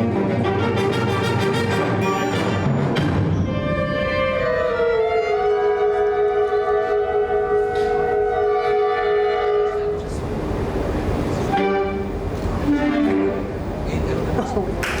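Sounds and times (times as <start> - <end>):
audience applause: 14.4 - 15.0.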